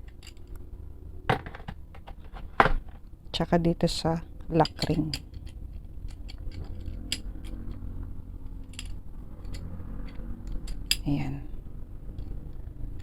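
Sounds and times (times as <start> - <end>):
low steady hum: 0.0 - 13.0
metal tool clicks and taps: 8.5 - 11.1.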